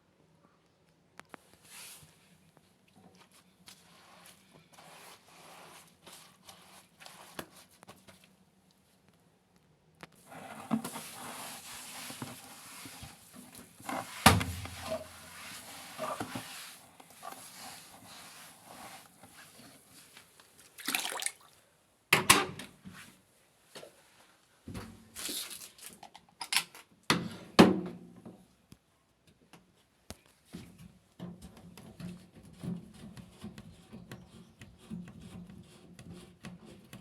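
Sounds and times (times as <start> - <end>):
water running and splashing: 20.7 - 21.6.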